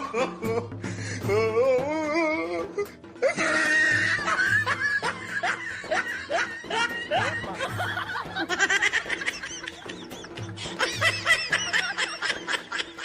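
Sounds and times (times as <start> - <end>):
person giggling: 3.2 - 13.0.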